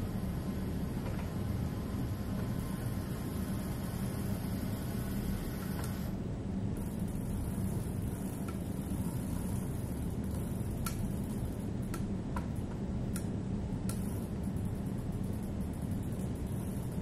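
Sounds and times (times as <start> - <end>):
steady low rumble: 0.0 - 17.0
bicycle clicking: 6.8 - 17.0.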